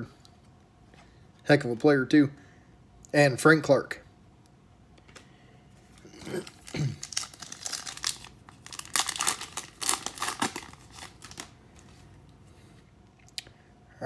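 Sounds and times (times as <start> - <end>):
foil wrapper crinkling and tearing: 5.8 - 12.0.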